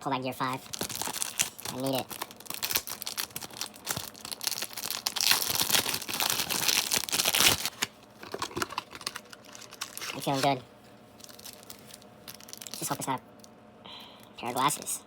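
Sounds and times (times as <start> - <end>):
foil card pack tearing and crinkling: 0.6 - 10.6, 11.2 - 13.1.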